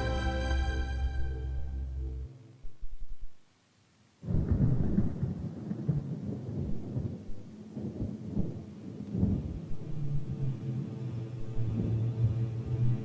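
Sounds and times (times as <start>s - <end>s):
music: 0.0s - 2.6s, 9.4s - 13.0s.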